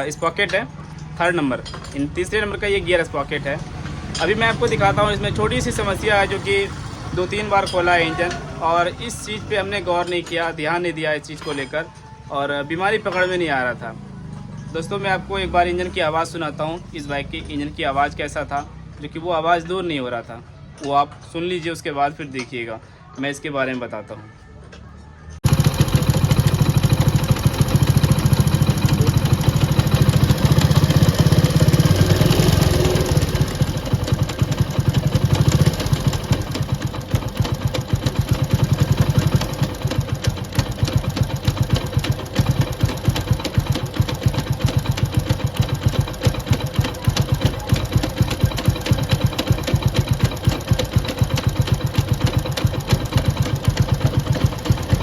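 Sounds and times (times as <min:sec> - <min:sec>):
motorcycle engine rattling: 0:00.0 - 0:11.9, 0:25.4 - 0:55.0.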